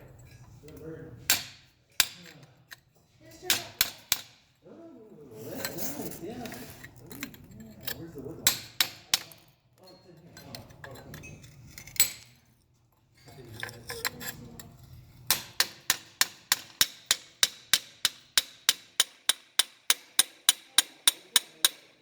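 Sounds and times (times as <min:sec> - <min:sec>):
hammer strikes ringing on bronze: 0:15.3 - 0:22.0.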